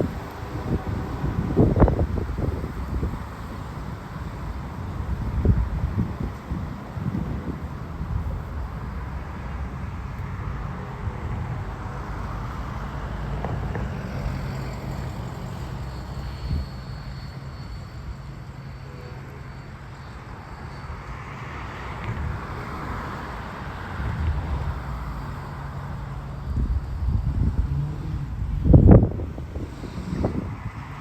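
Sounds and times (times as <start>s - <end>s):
diesel locomotive drone: 0.0s - 31.0s
rushing noise: 0.0s - 31.0s.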